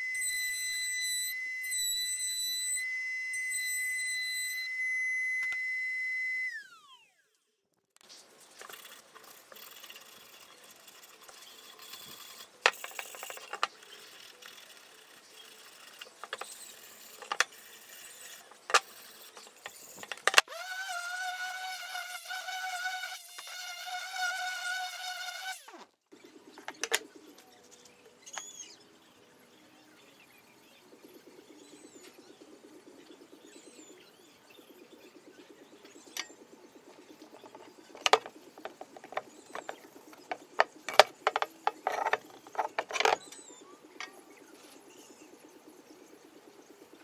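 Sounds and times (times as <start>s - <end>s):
power tool motor whine: 0.0s - 7.4s, 12.0s - 25.9s, 37.2s - 43.3s
sharp clicks and knocks: 18.4s - 20.5s, 26.6s - 27.1s, 37.2s - 43.4s.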